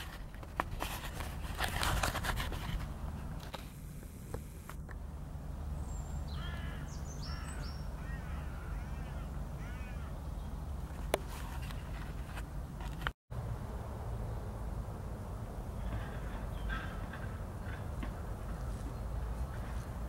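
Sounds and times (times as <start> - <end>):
crow cawing: 6.3 - 10.2, 15.9 - 17.4.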